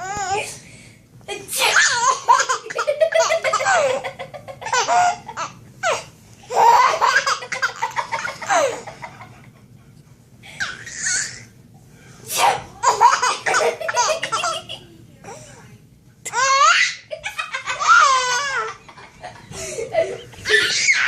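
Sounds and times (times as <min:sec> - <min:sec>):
baby laughing: 0:01.7 - 0:09.0, 0:12.8 - 0:14.8, 0:16.3 - 0:19.0, 0:19.6 - 0:21.0.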